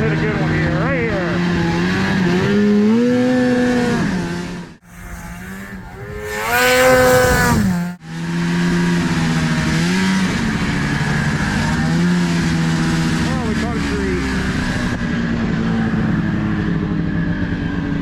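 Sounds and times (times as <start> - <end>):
snowmobile engine revving: 1.1 - 10.3.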